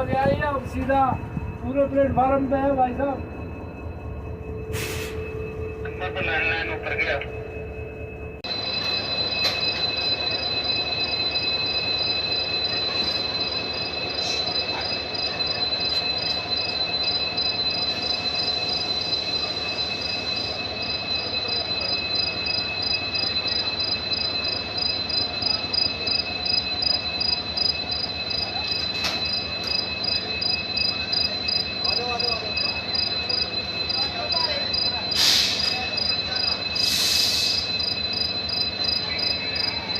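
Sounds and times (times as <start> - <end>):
insects trilling: 8.6 - 39.9.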